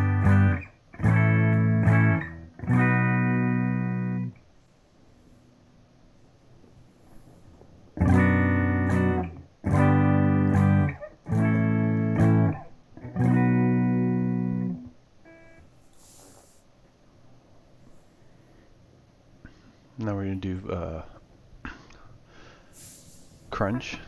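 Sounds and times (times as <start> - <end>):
electric guitar strumming chords: 0.0 - 4.4, 8.0 - 15.6.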